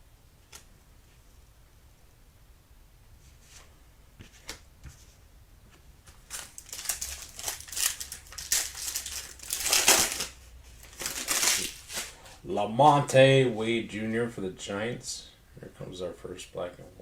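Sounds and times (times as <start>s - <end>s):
foil pack crackling: 6.1s - 12.3s.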